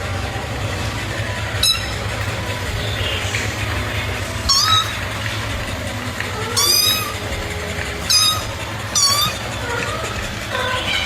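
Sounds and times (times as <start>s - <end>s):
steady low rumble: 0.0s - 11.0s
cat meowing: 4.4s - 5.0s, 6.4s - 7.2s, 8.1s - 11.0s.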